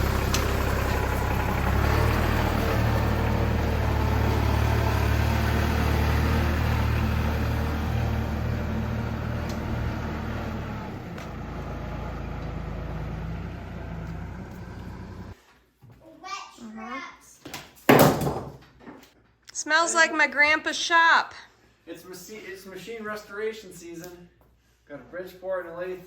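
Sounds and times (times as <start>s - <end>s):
vehicle engine humming: 0.0s - 15.4s.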